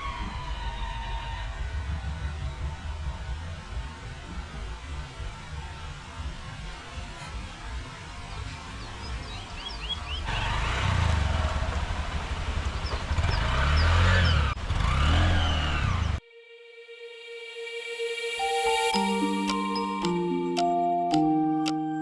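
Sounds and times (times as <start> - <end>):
vehicle engine rumbling: 0.0 - 16.2.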